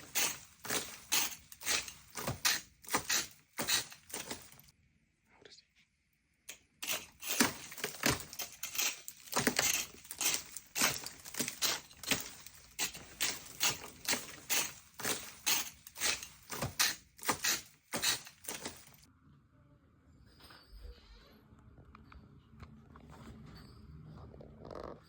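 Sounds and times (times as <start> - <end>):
sharp knocks and crunches: 0.0 - 4.7, 6.8 - 19.1.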